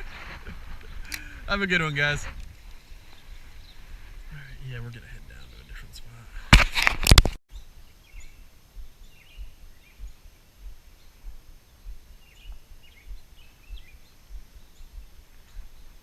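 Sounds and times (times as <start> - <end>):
small birds chirping: 0.0 - 6.5, 7.5 - 16.0
soft low footstep thuds: 8.8 - 16.0.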